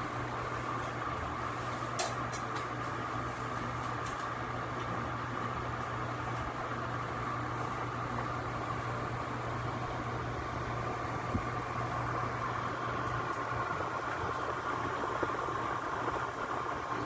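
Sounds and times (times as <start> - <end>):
air conditioner blower humming: 0.0 - 17.0.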